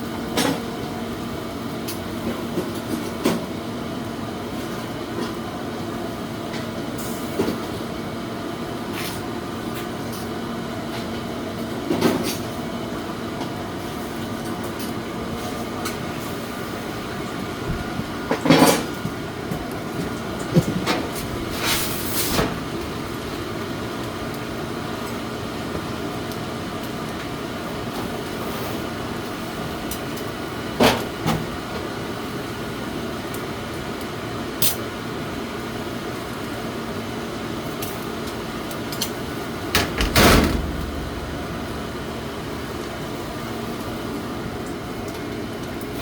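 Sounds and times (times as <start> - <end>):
mechanical hum: 0.0 - 46.0
short knocks and clatters: 39.8 - 42.9.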